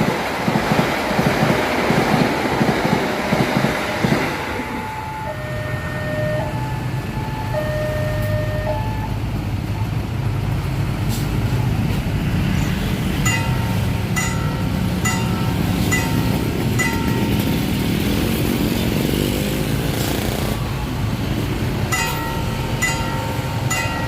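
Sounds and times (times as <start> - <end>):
low rumble of passing train: 0.0 - 24.0
level-crossing warning bell dinging: 4.3 - 9.3, 13.2 - 18.7, 21.8 - 24.0.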